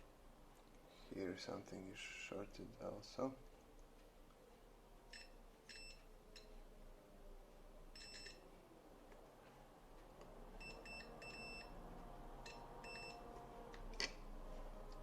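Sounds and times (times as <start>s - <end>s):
multimeter continuity beeps: 5.1s - 6.6s, 7.9s - 8.4s, 10.6s - 11.8s, 12.5s - 13.2s.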